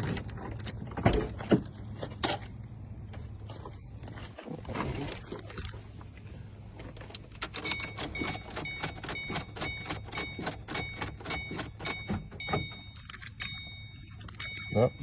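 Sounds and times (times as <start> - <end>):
car electronic warning chime: 7.4 - 15.0.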